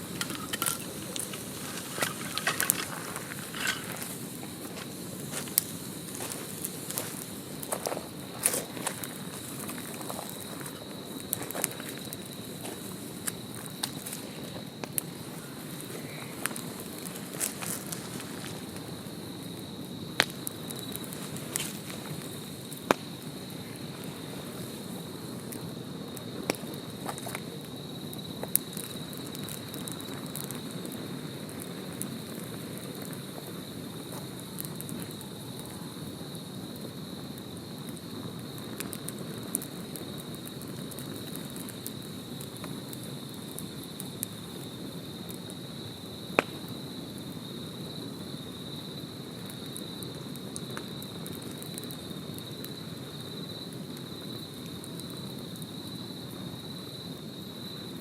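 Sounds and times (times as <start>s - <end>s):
campfire crackling and popping: 0.0s - 58.0s
insects trilling: 0.0s - 58.0s.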